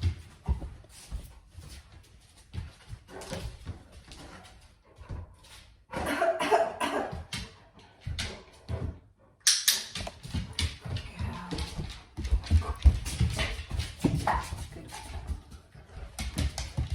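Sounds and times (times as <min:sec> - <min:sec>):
knocks and shuffles: 0:00.0 - 0:06.1, 0:10.0 - 0:16.9
person coughing: 0:06.0 - 0:07.3.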